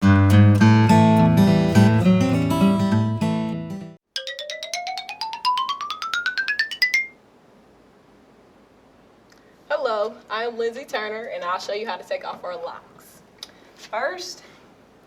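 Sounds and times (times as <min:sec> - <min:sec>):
acoustic guitar music: 0:00.0 - 0:04.0
rising plucked notes: 0:04.2 - 0:07.2.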